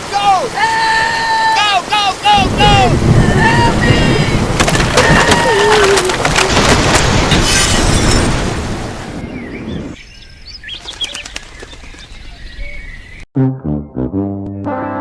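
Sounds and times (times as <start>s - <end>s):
water rushing: 0.0s - 9.4s
birds chirping: 6.5s - 13.3s.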